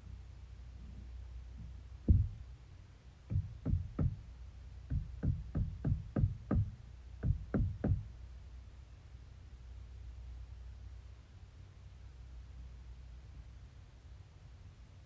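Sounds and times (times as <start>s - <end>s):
deep thumps: 1.6s - 2.5s, 3.3s - 4.2s, 4.9s - 8.1s.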